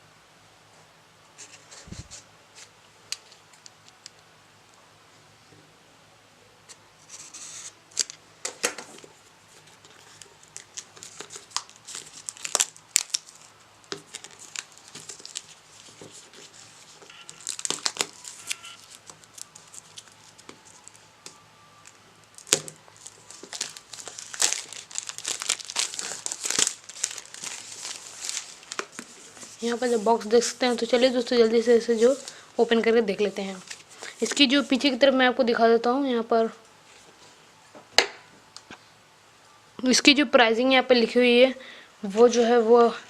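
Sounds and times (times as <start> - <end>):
packaging crinkling and crackling: 8.8 - 32.8, 33.5 - 34.6.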